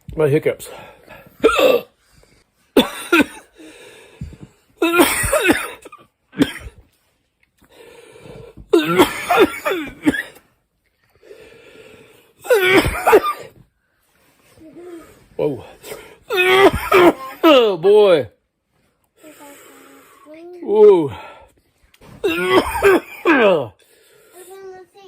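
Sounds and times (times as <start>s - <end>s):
wheezy breaths: 0.6s - 2.8s, 3.4s - 4.8s, 7.6s - 8.8s, 9.9s - 12.5s, 13.4s - 16.3s, 18.9s - 20.4s, 23.8s - 24.8s
man coughing: 1.4s - 2.0s, 2.8s - 3.5s, 4.8s - 6.8s, 8.7s - 10.4s, 12.4s - 13.5s, 16.2s - 17.8s, 22.2s - 23.7s.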